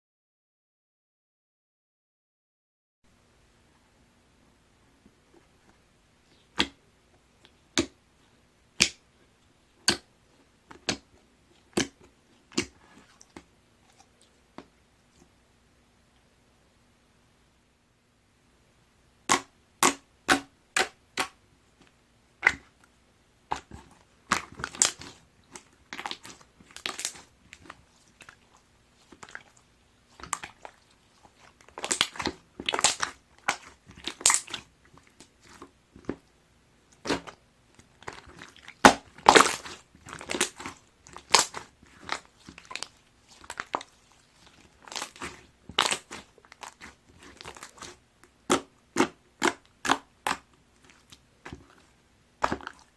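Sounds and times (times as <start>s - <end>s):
slime squelching and popping: 6.3s - 6.8s, 9.8s - 14.7s, 19.3s - 21.4s, 22.4s - 22.9s, 23.5s - 36.3s, 36.9s - 52.9s.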